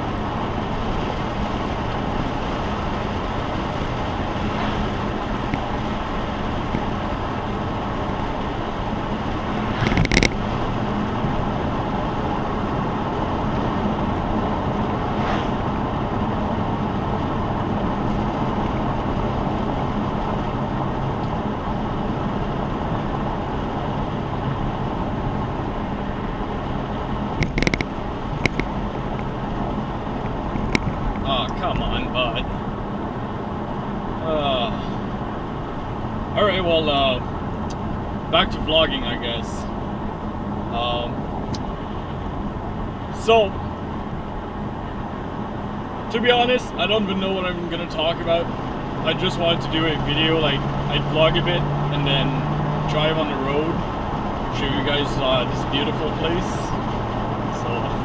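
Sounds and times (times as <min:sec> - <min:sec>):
car engine drone: 0:00.0 - 0:58.0
tyre and road noise: 0:00.0 - 0:58.0
small clicks: 0:27.4 - 0:28.7.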